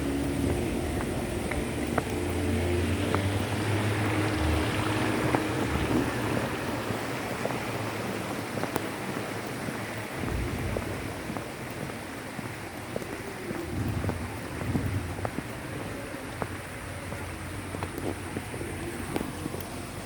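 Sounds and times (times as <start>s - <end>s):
falling water rushing: 0.0s - 20.0s
low engine-like hum: 0.0s - 20.0s.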